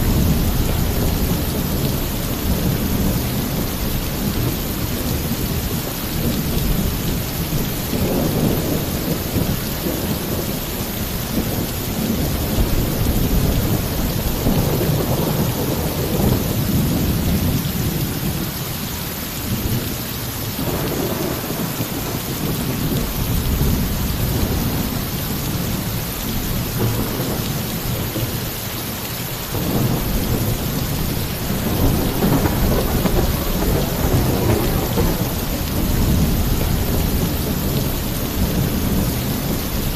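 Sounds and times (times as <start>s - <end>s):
thunder rumbling: 0.0s - 18.4s, 20.6s - 28.6s, 29.3s - 39.9s
heavy rain on a roof: 0.0s - 39.9s.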